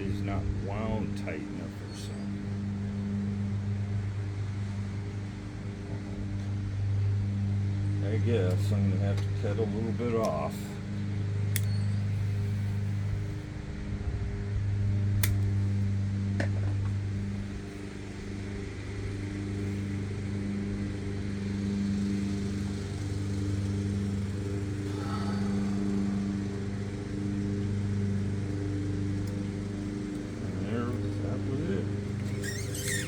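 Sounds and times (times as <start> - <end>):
low machine hum: 0.0 - 33.0
sharp clicks: 15.2 - 15.6.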